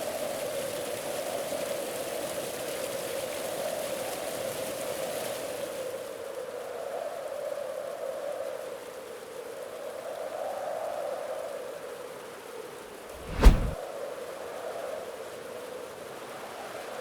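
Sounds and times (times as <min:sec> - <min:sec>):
sharp thump: 0:13.2 - 0:13.8.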